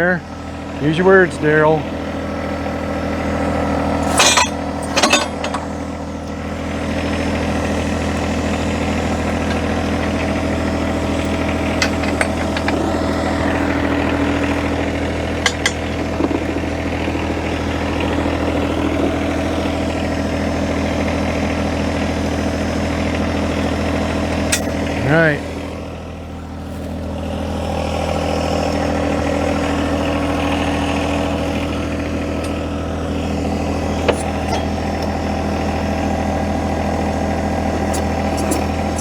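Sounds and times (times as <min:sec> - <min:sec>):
diesel tractor engine running: 0:00.0 - 0:39.0
loud sharp metal clanks: 0:04.0 - 0:05.8, 0:15.4 - 0:16.3.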